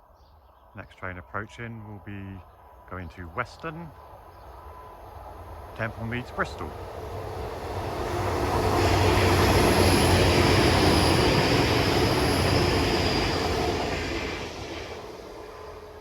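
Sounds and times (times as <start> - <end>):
train wheels rumbling on rails: 4.0 - 16.0.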